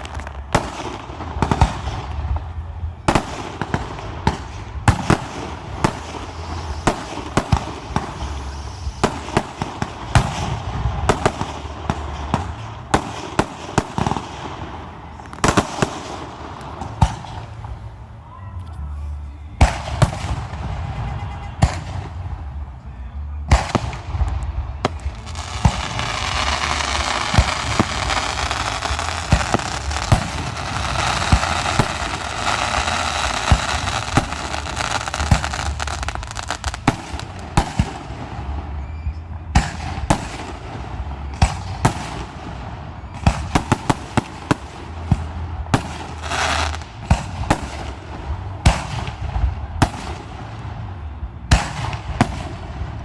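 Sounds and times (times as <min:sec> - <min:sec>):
dense rushing hiss: 0:00.0 - 0:21.0, 0:23.6 - 0:38.9.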